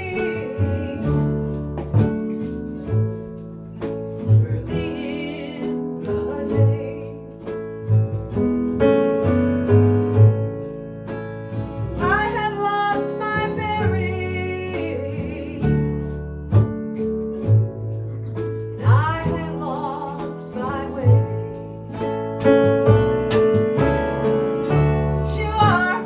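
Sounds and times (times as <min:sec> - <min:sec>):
woman singing: 0:00.0 - 0:02.1, 0:04.2 - 0:07.6, 0:12.0 - 0:16.6, 0:18.7 - 0:22.1, 0:23.8 - 0:26.0
live band playing: 0:06.4 - 0:15.9, 0:16.5 - 0:26.0.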